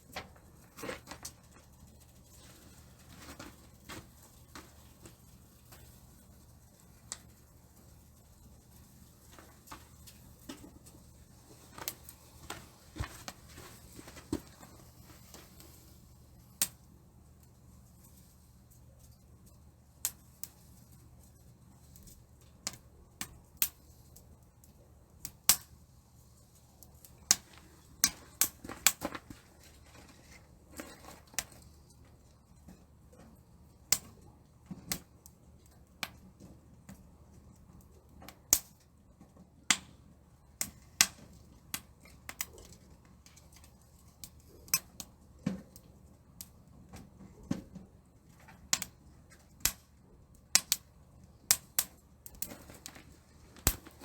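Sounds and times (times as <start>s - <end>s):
fire crackling in camp stove: 0.0s - 54.0s
sharp pops of fire: 8.8s - 16.9s, 20.0s - 21.0s, 21.9s - 25.8s, 26.8s - 32.0s, 33.4s - 36.2s, 37.8s - 38.9s, 39.6s - 45.8s, 48.3s - 54.0s.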